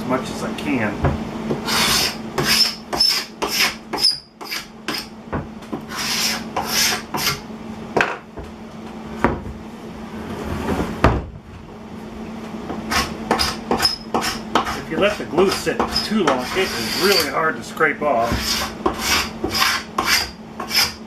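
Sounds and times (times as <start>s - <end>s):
hand scraper scraping wood: 1.6s - 5.1s, 5.8s - 7.4s, 12.9s - 17.4s, 18.2s - 21.0s.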